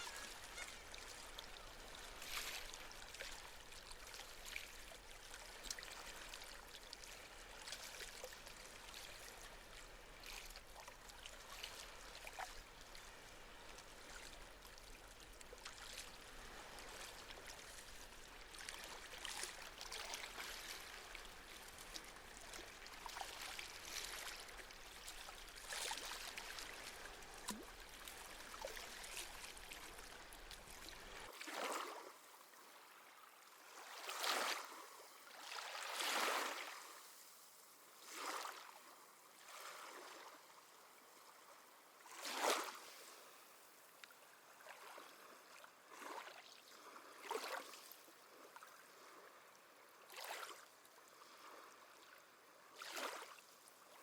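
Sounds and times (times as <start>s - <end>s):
small waves lapping at shore: 0.0s - 54.0s.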